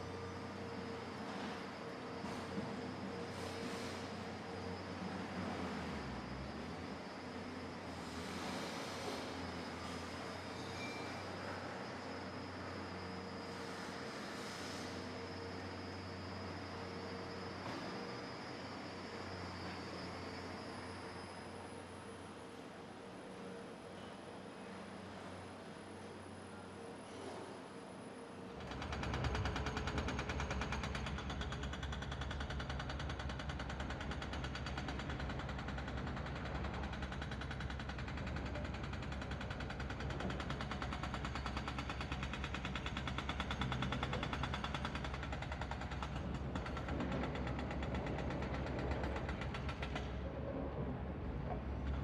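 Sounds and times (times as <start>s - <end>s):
engine running with knocking pulse: 28.6s - 50.3s.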